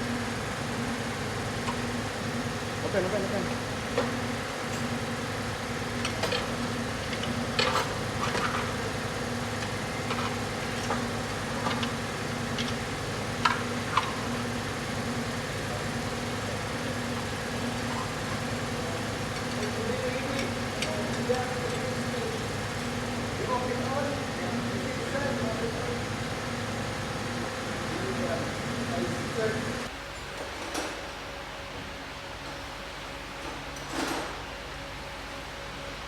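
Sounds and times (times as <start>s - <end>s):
mechanical hum: 0.0s - 36.0s.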